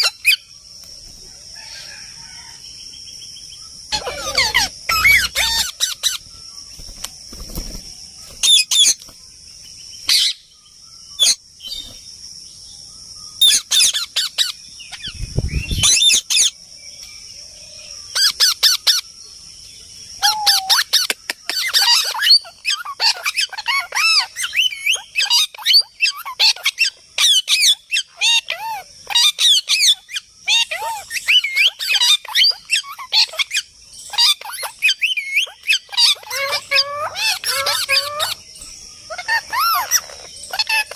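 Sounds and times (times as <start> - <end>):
parrots squawking and chirping: 0.0 - 0.4, 3.9 - 6.3, 8.4 - 9.0, 10.1 - 10.5, 11.2 - 12.0, 13.4 - 15.2, 15.8 - 16.6, 18.1 - 19.0, 20.2 - 40.9
steady high-pitched hiss: 0.1 - 22.7.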